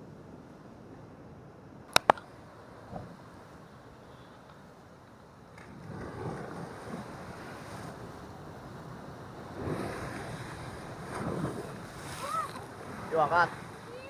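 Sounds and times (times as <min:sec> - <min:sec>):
sea waves on rocky shore: 0:02.0 - 0:14.0
wind buffeting microphone: 0:05.6 - 0:14.0.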